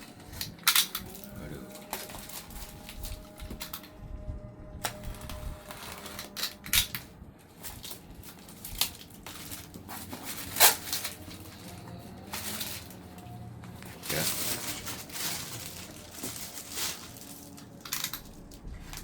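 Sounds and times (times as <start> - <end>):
cardboard package being handled: 0.0 - 3.9, 4.8 - 19.0.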